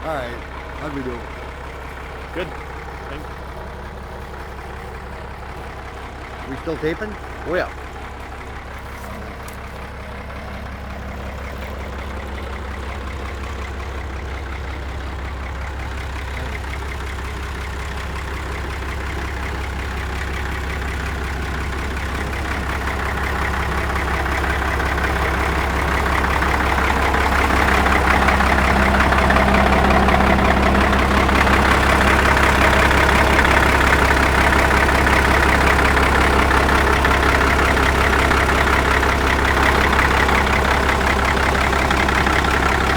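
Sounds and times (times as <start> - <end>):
diesel engine idling: 0.0 - 42.9.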